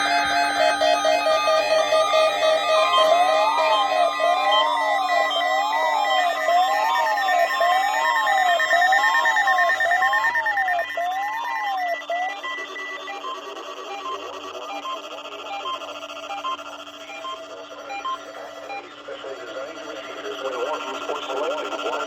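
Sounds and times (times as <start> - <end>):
warbling electronic alert tones: 0.0 - 14.8
repeating beeps: 0.0 - 21.5.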